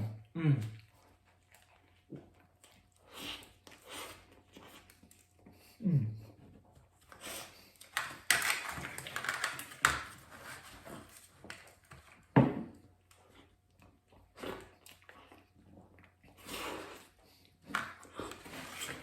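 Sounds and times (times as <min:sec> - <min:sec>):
man chewing: 0:00.6 - 0:09.1, 0:13.0 - 0:19.0.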